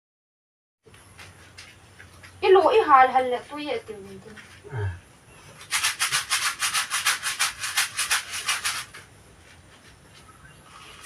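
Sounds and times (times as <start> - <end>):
quick scraping strokes: 5.5 - 10.0.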